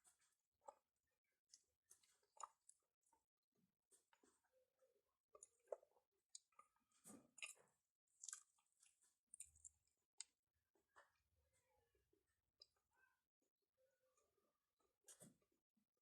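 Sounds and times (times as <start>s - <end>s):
chewing pizza: 1.5s - 2.9s, 5.3s - 11.1s.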